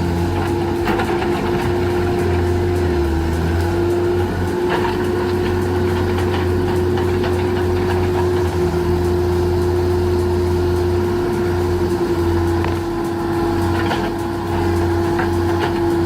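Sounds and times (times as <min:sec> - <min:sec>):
heavy machine engine whining: 0:00.0 - 0:16.0.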